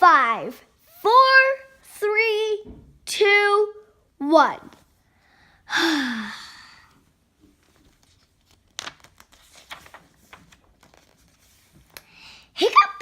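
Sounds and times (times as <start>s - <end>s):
child sighing breath out: 5.7s - 6.9s
book pages rustling: 7.5s - 12.1s.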